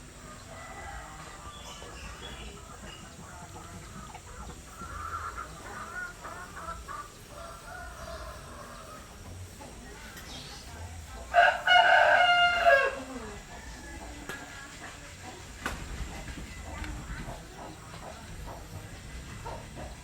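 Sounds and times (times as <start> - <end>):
chicken clucking: 0.0 - 20.0
rooster crowing: 0.3 - 2.0, 7.3 - 9.1, 11.3 - 14.2
bird calls: 1.3 - 8.9.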